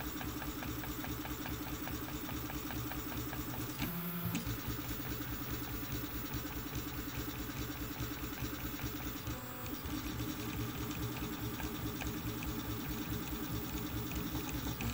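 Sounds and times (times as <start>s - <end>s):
printer stepper motors whining: 0.0s - 14.9s.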